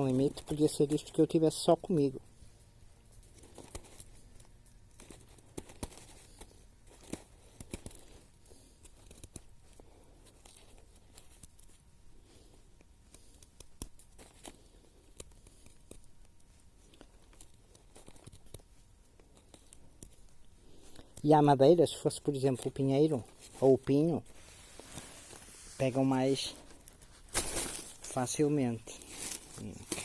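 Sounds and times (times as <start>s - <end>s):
dry wood crackling: 0.0s - 30.0s
light rustling: 23.2s - 30.0s.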